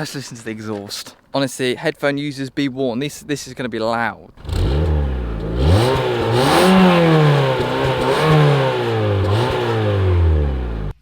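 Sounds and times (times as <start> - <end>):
car engine revving: 4.4 - 11.0.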